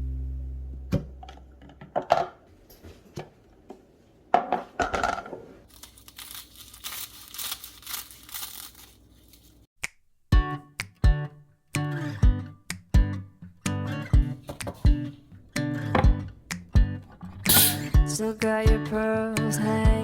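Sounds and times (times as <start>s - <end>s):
plastic crinkling and tearing: 5.7s - 9.7s.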